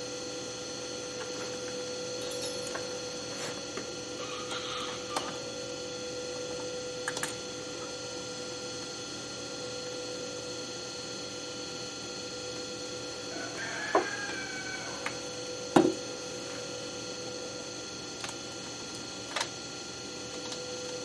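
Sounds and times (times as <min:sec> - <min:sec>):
steady multi-tone hum: 0:00.0 - 0:08.7.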